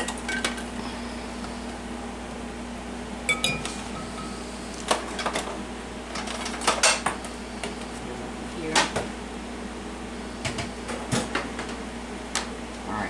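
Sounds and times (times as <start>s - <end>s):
kitchen utensils clinking: 0.0s - 0.8s, 3.3s - 7.1s
steady low hum: 0.0s - 13.0s.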